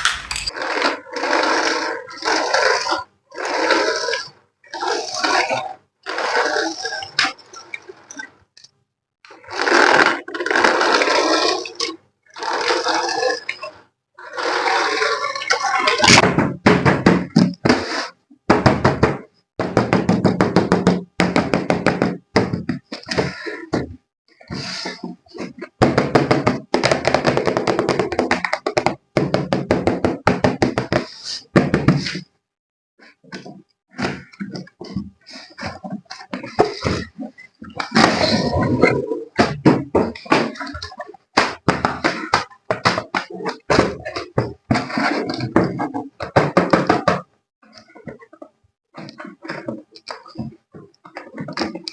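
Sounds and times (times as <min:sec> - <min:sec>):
toy clicks and knocks: 0:00.0 - 0:00.5.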